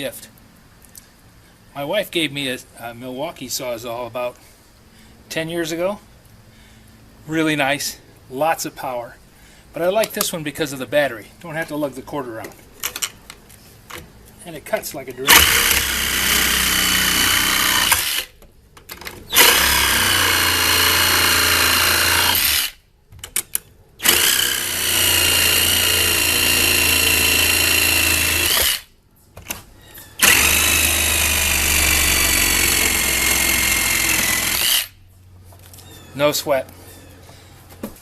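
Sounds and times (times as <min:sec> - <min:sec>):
reciprocating saw cutting steel bolts: 0:15.2 - 0:18.4, 0:19.3 - 0:22.8, 0:24.0 - 0:28.9, 0:30.2 - 0:35.0.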